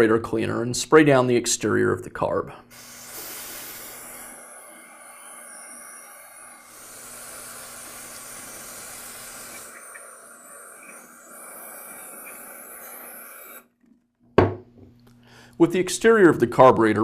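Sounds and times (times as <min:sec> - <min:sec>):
aerosol spray hissing: 0:02.7 - 0:13.7.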